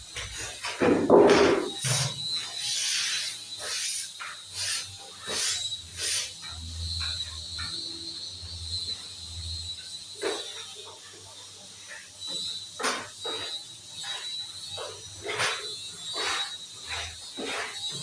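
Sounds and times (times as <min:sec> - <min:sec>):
wood scraping strokes: 0:12.3 - 0:18.0.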